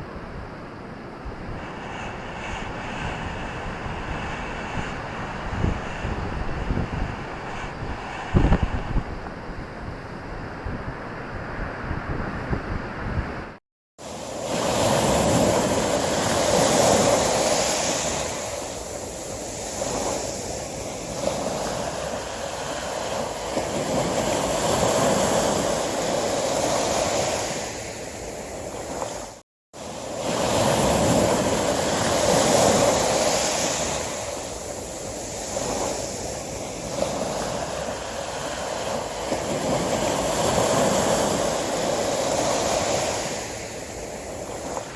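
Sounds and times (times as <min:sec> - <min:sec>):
ocean surf washing in: 0:00.0 - 0:44.9
wind on microphone: 0:00.0 - 0:44.9.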